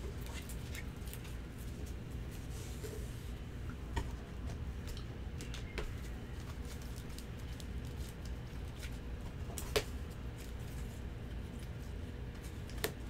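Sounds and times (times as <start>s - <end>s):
steady low hum: 0.0s - 13.0s
cards rustling in plastic sleeves: 5.4s - 13.0s.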